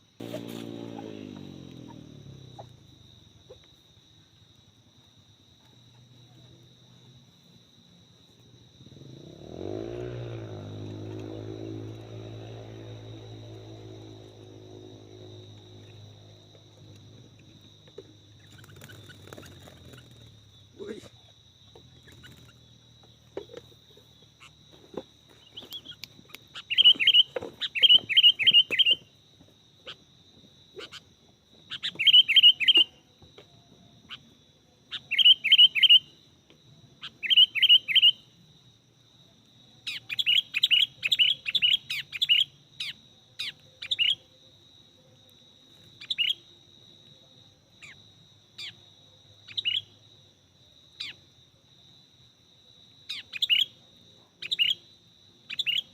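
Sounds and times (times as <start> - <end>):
bulbul calling: 0.2 - 2.9, 16.8 - 20.5, 21.7 - 22.7, 25.4 - 29.1, 31.7 - 33.0, 34.9 - 36.1, 37.0 - 38.2, 39.9 - 44.2, 53.1 - 53.8, 54.4 - 54.8, 55.5 - 55.9.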